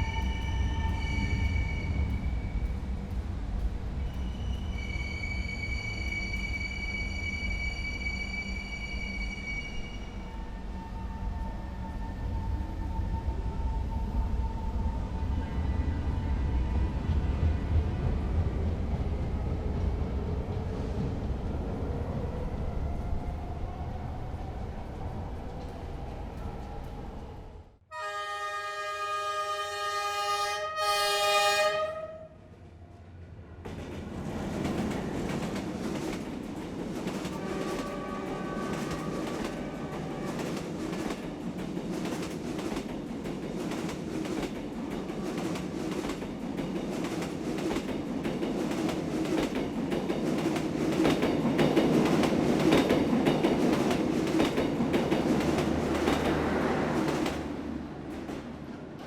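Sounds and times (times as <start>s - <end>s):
train rumbling: 0.0s - 27.9s, 29.0s - 59.0s
train horn blasts: 27.9s - 32.5s, 37.3s - 40.7s.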